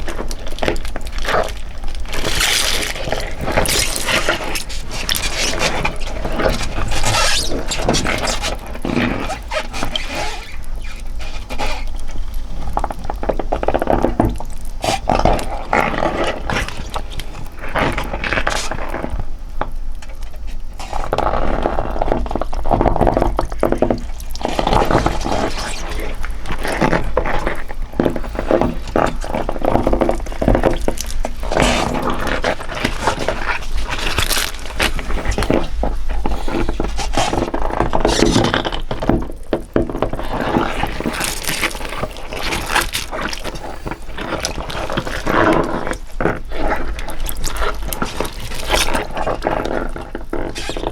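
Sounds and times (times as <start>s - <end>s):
wet squelches and splashes: 0.0s - 19.0s, 21.8s - 50.9s.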